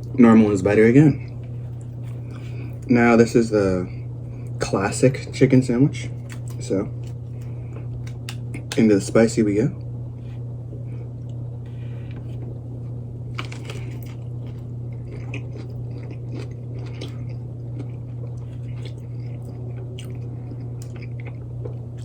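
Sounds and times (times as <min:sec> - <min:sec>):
low electrical hum: 0:00.0 - 0:22.0
person biting and chewing food: 0:06.1 - 0:08.8, 0:12.0 - 0:22.0
small crunches: 0:06.1 - 0:08.8, 0:13.3 - 0:22.0.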